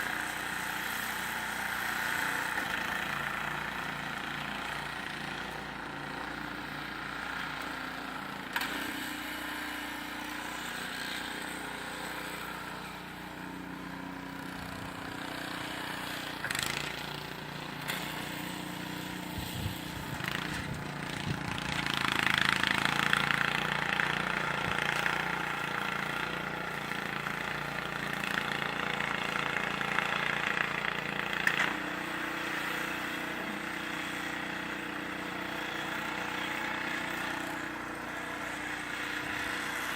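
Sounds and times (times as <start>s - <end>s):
engine running: 0.0s - 39.9s.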